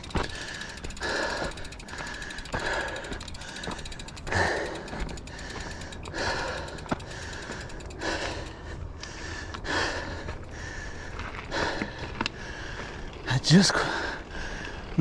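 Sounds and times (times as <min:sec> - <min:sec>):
sharp clicks: 0:00.0 - 0:08.8
heavy gasping breaths: 0:00.0 - 0:15.0.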